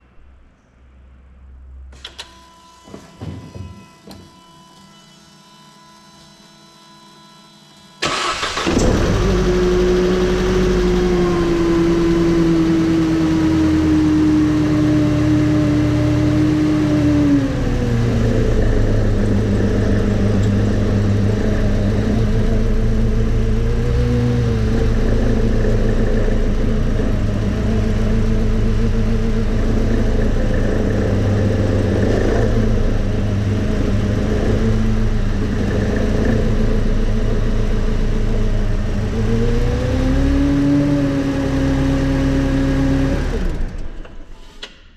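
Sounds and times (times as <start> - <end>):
car engine starting and idling: 8.0 - 44.9
steady grinding tone: 9.8 - 43.5.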